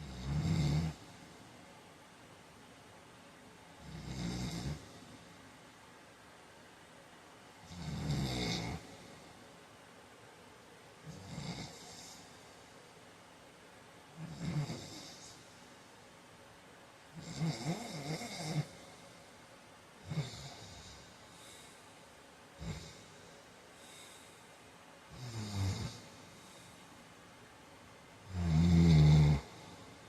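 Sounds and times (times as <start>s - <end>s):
man snoring: 0.0s - 1.0s, 3.8s - 5.0s, 7.6s - 9.0s, 11.1s - 12.2s, 14.2s - 15.4s, 17.2s - 18.8s, 20.0s - 21.6s, 22.6s - 23.1s, 25.1s - 26.1s, 28.3s - 29.8s.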